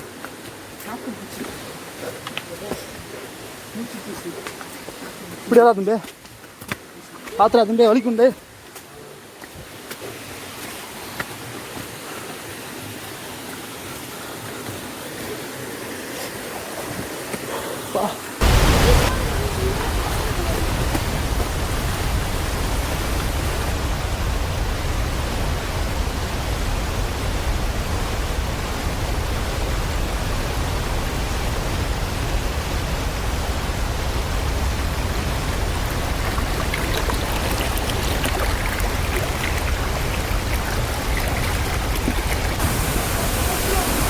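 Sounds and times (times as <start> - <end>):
stream rushing over stones: 0.0 - 44.0.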